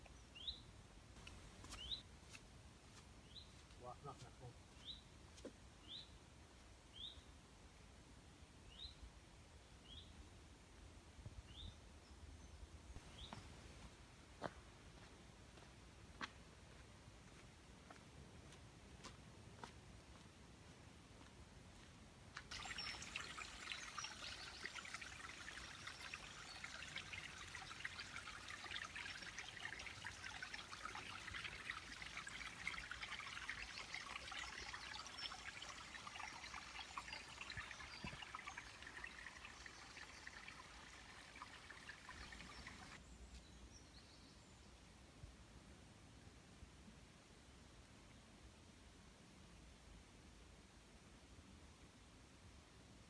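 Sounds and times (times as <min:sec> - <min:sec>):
water trickling: 0:22.5 - 0:43.0.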